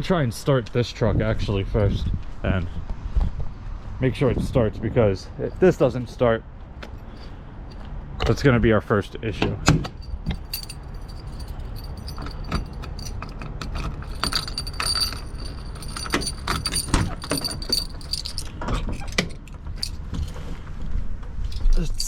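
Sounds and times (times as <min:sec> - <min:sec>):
keys jangling: 0:09.9 - 0:20.4, 0:21.5 - 0:22.0.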